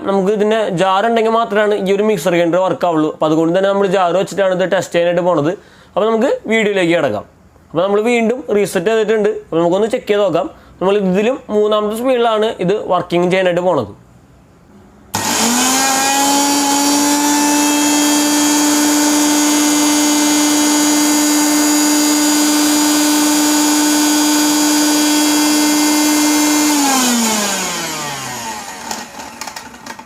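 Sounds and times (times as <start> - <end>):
mixer grinder motor whining: 15.1 - 30.0.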